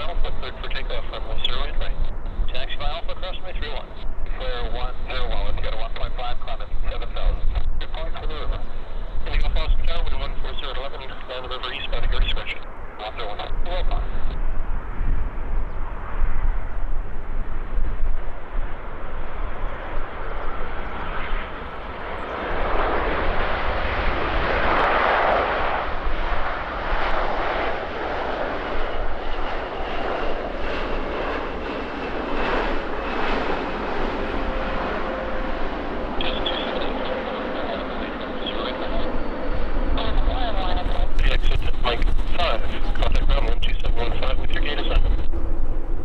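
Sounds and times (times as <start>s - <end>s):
jet engines rushing: 0.0s - 46.0s
wind rumbling on microphone: 0.0s - 46.0s
faint high whine: 28.9s - 46.0s.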